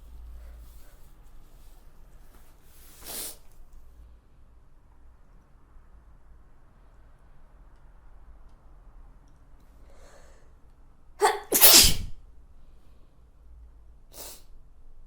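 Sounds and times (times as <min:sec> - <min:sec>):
person breathing: 0:09.8 - 0:10.6
person sneezing: 0:11.2 - 0:12.2.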